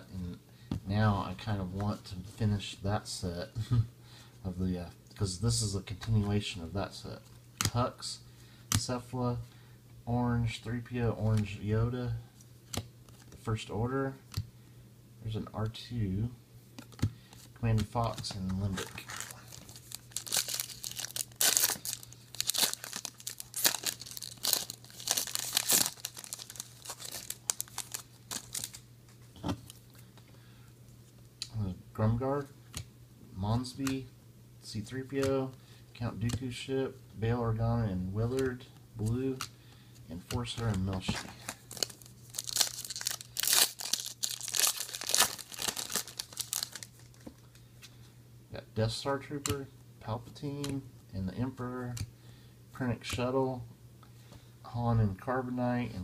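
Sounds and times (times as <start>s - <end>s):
wrapper tearing and crinkling: 18.7s - 28.8s, 41.2s - 47.3s.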